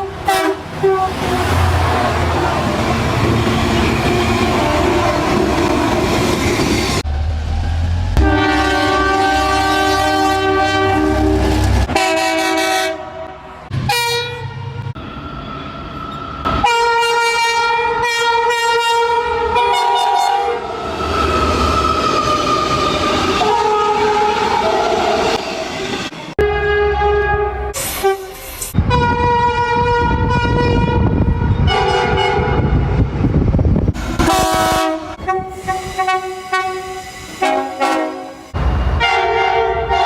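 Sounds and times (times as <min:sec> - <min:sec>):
train horns: 0:00.0 - 0:02.5, 0:03.2 - 0:06.2, 0:08.2 - 0:15.0, 0:16.5 - 0:20.8, 0:23.4 - 0:25.4, 0:26.4 - 0:33.1, 0:34.2 - 0:40.0
train wheels on rails: 0:00.0 - 0:09.6.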